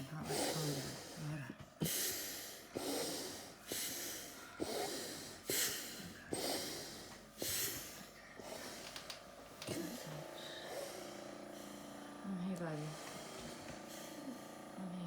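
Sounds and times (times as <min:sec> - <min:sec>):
child's harsh noisy breathing: 0:00.0 - 0:09.1, 0:09.7 - 0:12.0.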